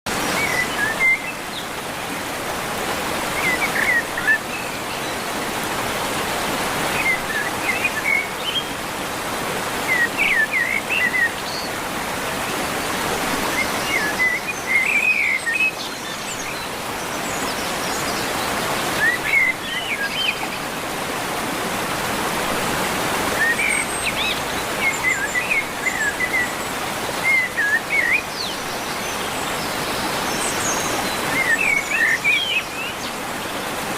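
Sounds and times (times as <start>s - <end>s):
falling water rushing: 0.1s - 33.9s.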